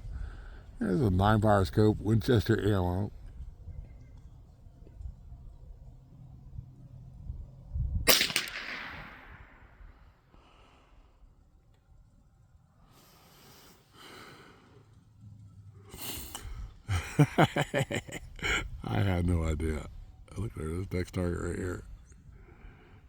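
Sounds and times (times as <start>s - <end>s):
soft breathy noises: 0.0s - 0.8s, 10.2s - 11.4s, 12.8s - 16.9s, 21.9s - 23.0s
rifle shot with echo: 8.1s - 10.1s.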